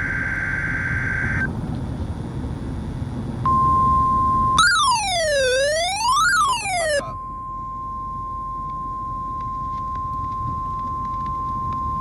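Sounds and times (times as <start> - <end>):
electronic wail sweeping in pitch: 4.6 - 7.0
steady warning alarm tone: 4.6 - 7.1.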